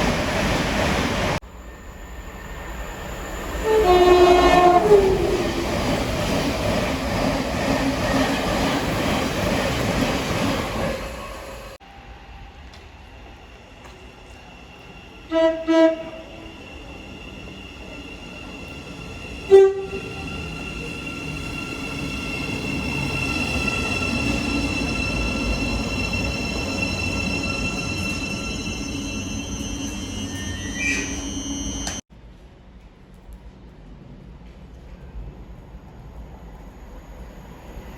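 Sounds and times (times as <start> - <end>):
train high whine: 0.0 - 32.0
train rumbling: 0.0 - 37.9
train horn toots: 3.6 - 5.4, 15.3 - 16.4, 19.5 - 20.2.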